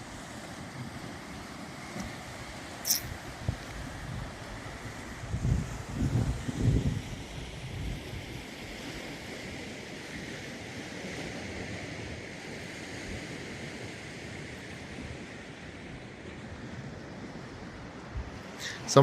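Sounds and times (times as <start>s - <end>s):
wind buffeting microphone: 2.6s - 9.6s.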